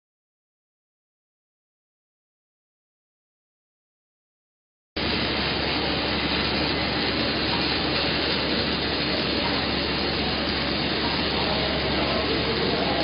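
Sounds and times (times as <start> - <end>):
workshop machinery running: 5.0 - 13.0.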